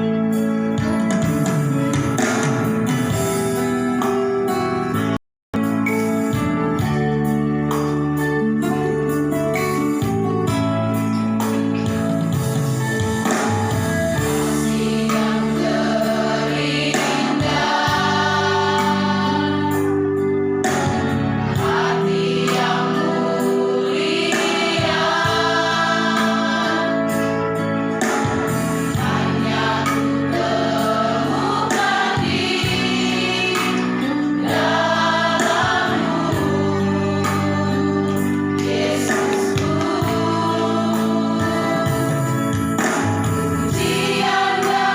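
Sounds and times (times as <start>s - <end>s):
choir singing a hymn: 14.1s - 44.9s.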